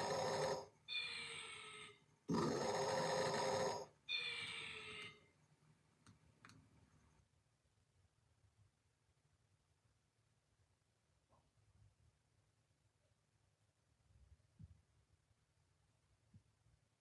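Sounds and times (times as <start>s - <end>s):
person snoring: 0.0s - 0.7s, 2.3s - 3.9s
faint clicks: 6.0s - 6.7s.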